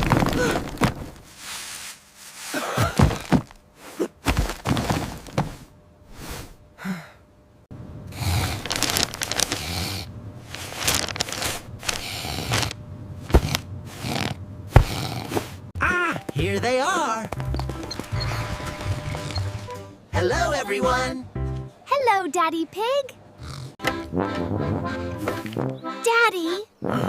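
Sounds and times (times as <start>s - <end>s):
books falling thuds and clatter: 0.0s - 1.3s, 2.7s - 3.6s, 4.2s - 5.7s.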